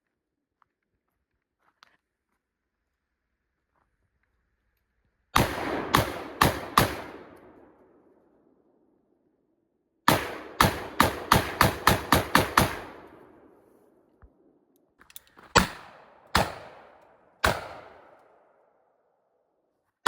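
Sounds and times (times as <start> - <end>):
gunshots: 5.4 - 7.8, 10.1 - 13.6, 15.5 - 18.4.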